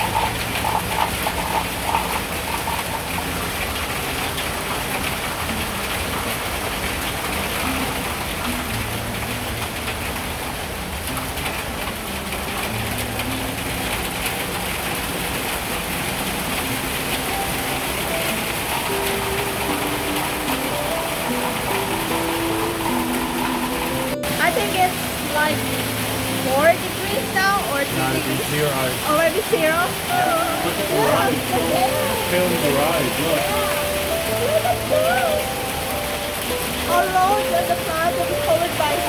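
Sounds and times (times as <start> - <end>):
hailstones pattering on ground and roof: 0.0 - 39.0.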